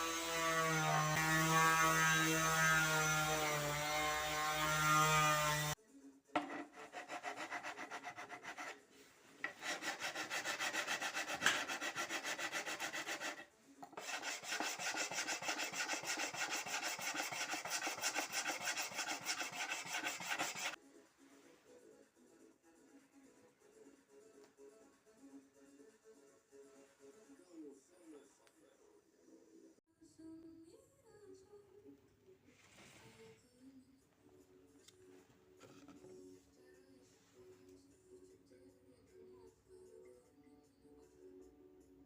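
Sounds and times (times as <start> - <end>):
hand tool rubbing on wood: 6.4 - 20.8.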